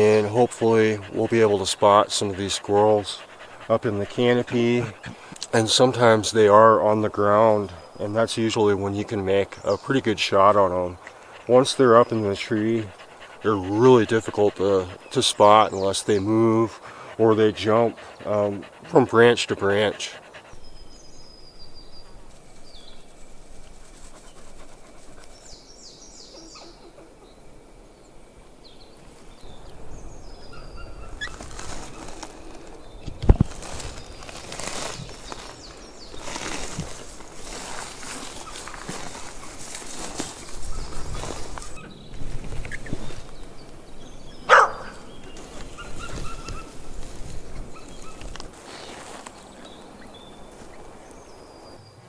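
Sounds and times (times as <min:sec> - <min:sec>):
birds chirping: 0:00.0 - 0:52.0
rustling: 0:19.7 - 0:25.8, 0:31.1 - 0:51.8
faint bird chirps: 0:20.2 - 0:33.0
dog barking: 0:44.5 - 0:45.1.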